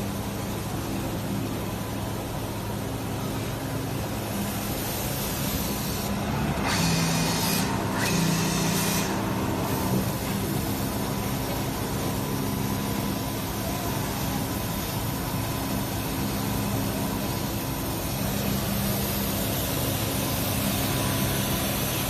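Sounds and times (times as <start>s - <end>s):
cutting machine humming: 5.6s - 13.1s.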